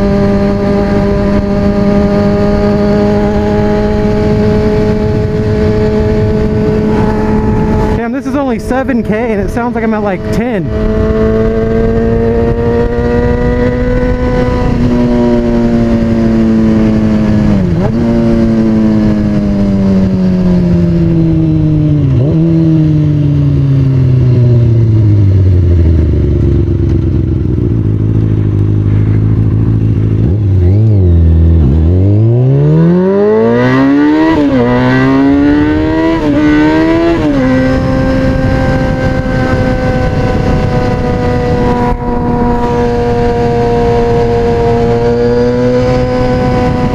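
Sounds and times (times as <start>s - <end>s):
motorcycle engine revving: 0.0s - 46.9s.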